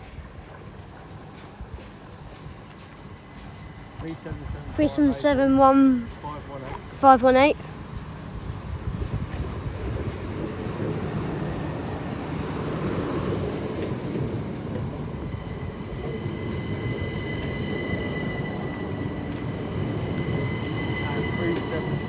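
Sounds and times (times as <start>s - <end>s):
train rumbling past: 0.6s - 22.0s
train wheels squealing: 7.7s - 22.0s.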